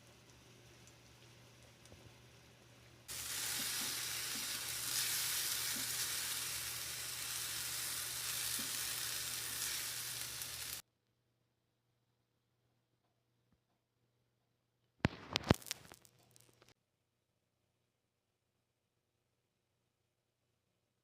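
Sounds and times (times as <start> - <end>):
food sizzling in a frying pan: 0.0 - 10.8, 15.1 - 16.7.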